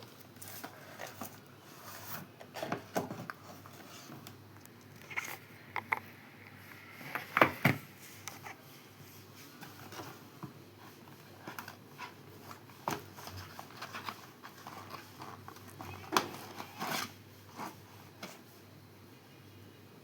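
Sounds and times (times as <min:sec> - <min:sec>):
packaging rustling: 0:11.1 - 0:17.8.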